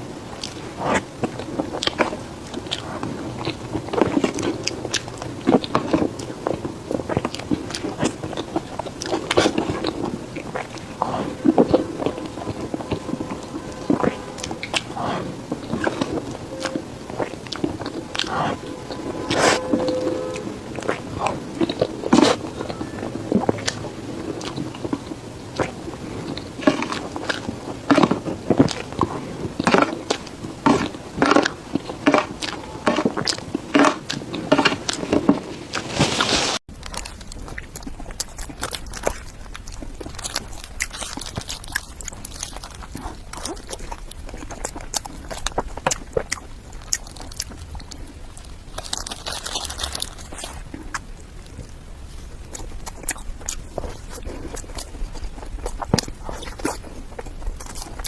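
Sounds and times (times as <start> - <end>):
person biting and chewing cake: 0.0 - 18.6, 20.7 - 35.3, 36.7 - 58.0
steady low rumble: 0.0 - 35.7.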